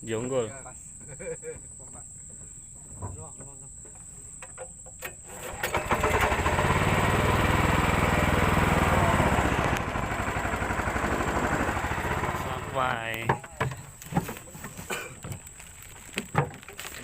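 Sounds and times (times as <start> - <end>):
small engine running: 5.4 - 13.0.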